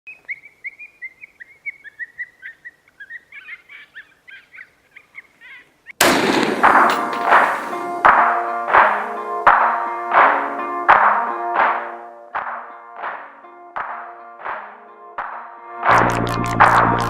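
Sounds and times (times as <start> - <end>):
birds chirping: 0.1 - 6.0
loud music with heavy beat: 15.9 - 17.0.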